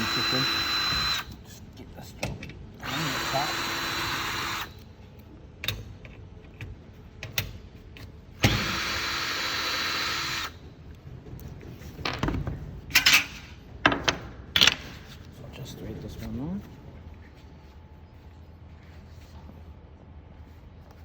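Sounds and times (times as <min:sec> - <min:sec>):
power drill-driver spinning: 0:00.0 - 0:01.3, 0:02.8 - 0:04.8.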